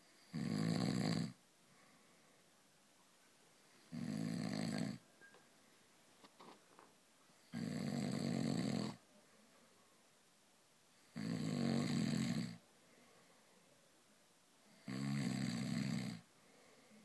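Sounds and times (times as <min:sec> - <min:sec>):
person snoring: 0:00.2 - 0:01.4, 0:03.8 - 0:05.0, 0:07.5 - 0:09.0, 0:11.1 - 0:12.6, 0:14.8 - 0:16.2.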